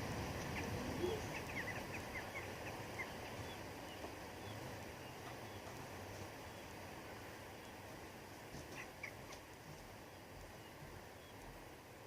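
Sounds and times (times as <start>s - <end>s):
low outdoor noise: 0.0s - 12.0s
small bird chirping: 0.4s - 5.8s.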